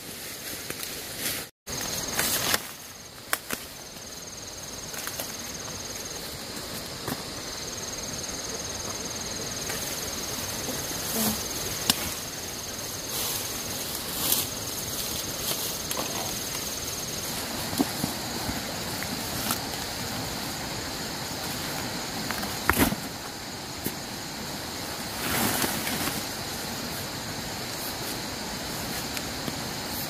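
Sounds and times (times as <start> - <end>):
high pulsing insect trill: 1.7 - 30.0.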